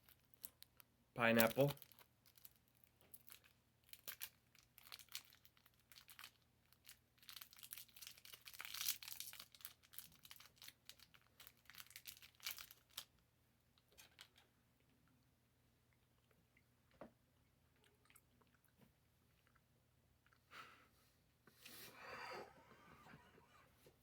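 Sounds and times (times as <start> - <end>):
candy wrapper crinkling: 0.0 - 14.5.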